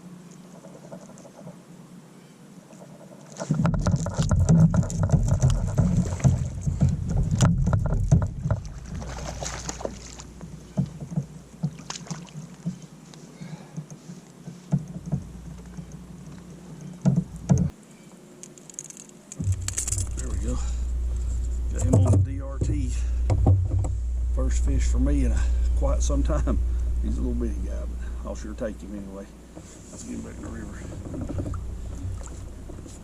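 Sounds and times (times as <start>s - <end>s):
knocking and rustling on a kayak: 2.8s - 17.8s, 18.8s - 24.1s, 29.5s - 33.0s
low rumble: 3.5s - 10.8s, 19.4s - 33.0s.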